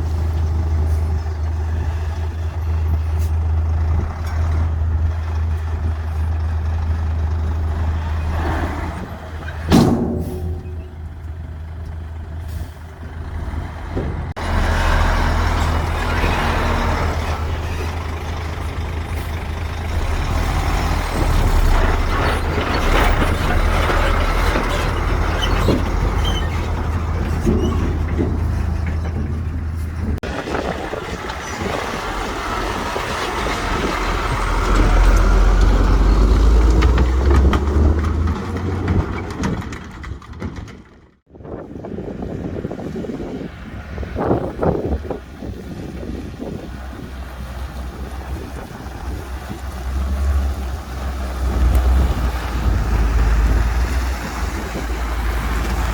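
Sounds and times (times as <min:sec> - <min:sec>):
diesel engines rumbling: 0:00.0 - 0:55.9
machinery knocks: 0:09.7 - 0:11.3.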